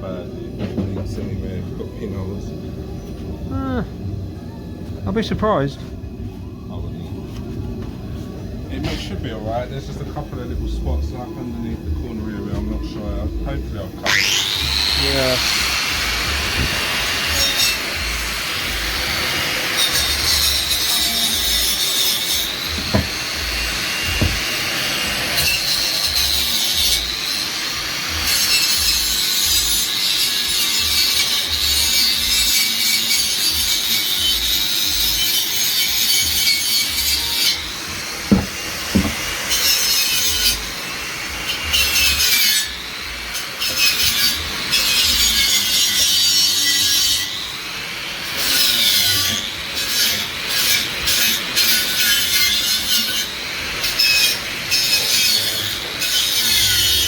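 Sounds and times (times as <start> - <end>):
angle grinder grinding metal: 14.0 - 57.0.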